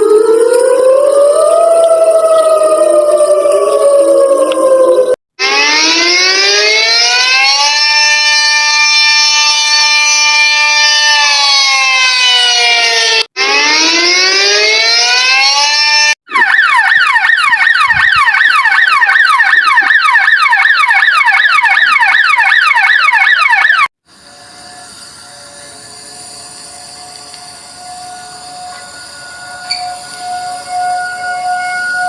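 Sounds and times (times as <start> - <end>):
electronic siren wailing: 0.0 - 32.0
fast siren yelp: 0.0 - 32.0.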